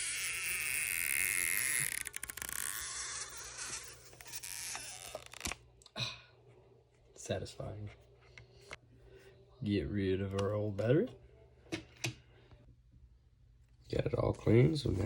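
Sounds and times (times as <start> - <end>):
adhesive tab crackling: 1.2 - 5.6.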